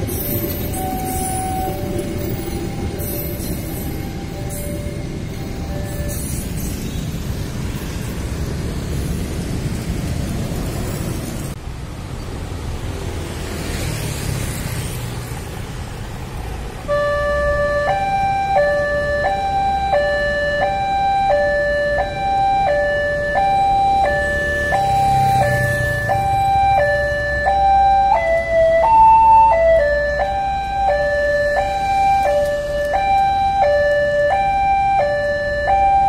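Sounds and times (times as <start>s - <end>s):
two-tone crossing siren: 0.0s - 6.8s, 16.8s - 36.0s
road traffic rumble: 0.0s - 36.0s.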